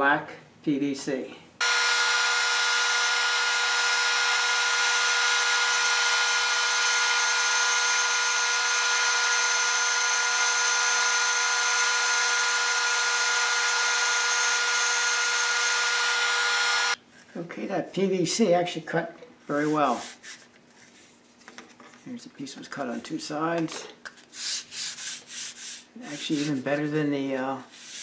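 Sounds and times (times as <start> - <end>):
band saw cutting plastic: 1.6 - 17.0.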